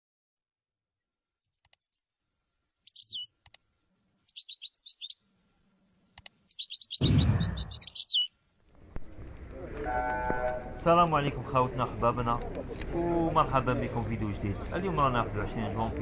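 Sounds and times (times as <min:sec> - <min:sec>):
songbird twittering: 0:01.4 - 0:03.3, 0:04.2 - 0:05.2, 0:06.5 - 0:09.6, 0:11.4 - 0:15.9
sharp clicks: 0:01.5 - 0:01.9, 0:06.1 - 0:06.4.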